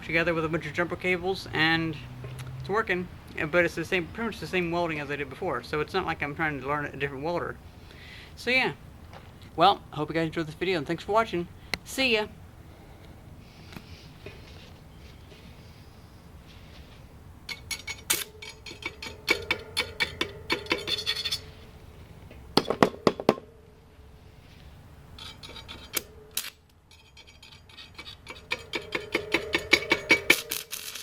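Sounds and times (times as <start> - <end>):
welding arc crackling: 30.3 - 31.0.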